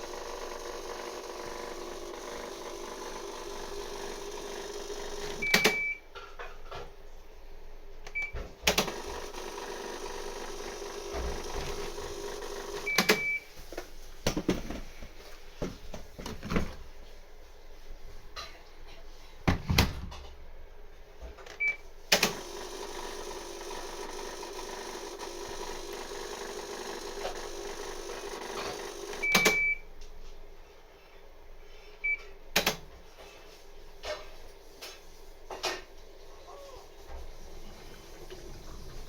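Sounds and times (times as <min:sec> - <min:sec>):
motor hum: 0:00.0 - 0:05.5, 0:08.8 - 0:12.9, 0:22.2 - 0:29.4
washer clunks and knocks: 0:19.5 - 0:20.4.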